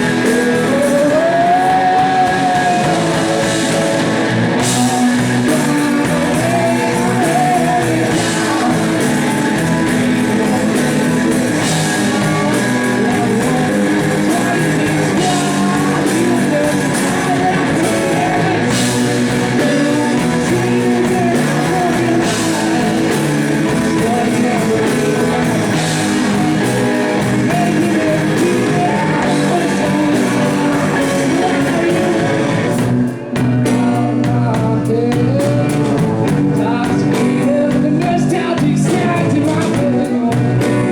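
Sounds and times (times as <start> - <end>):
blues-rock band playing loudly: 0.0 - 40.9
drum kit: 0.0 - 40.9
electric guitar: 0.0 - 40.9.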